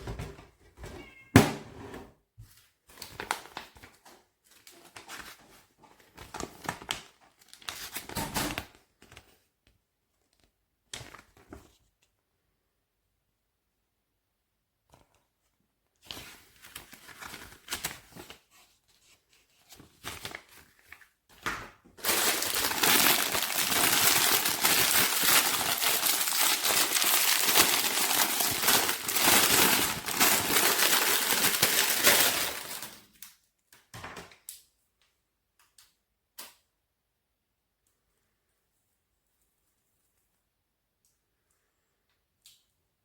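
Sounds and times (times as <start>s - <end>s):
packaging crinkling: 22.0s - 33.2s.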